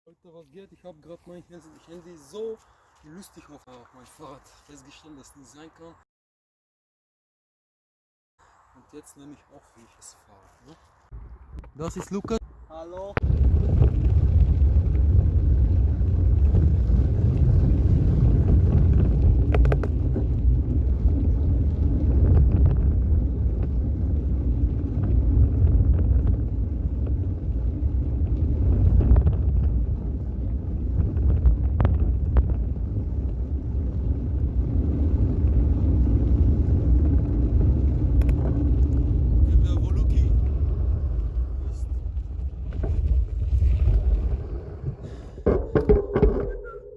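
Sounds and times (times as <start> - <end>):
wind buffeting microphone: 11.1 - 46.9
bicycle riding over trail: 13.0 - 46.2.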